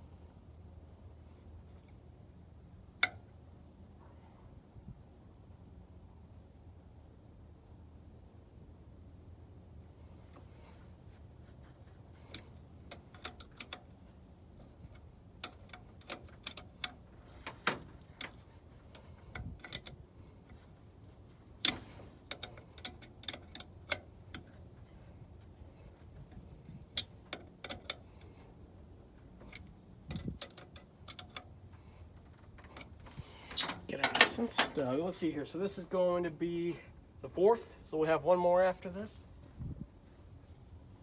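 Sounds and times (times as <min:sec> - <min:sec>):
tools clicking and tapping: 0:12.0 - 0:14.0, 0:14.6 - 0:24.8, 0:26.3 - 0:28.4, 0:29.4 - 0:31.6, 0:32.2 - 0:34.9.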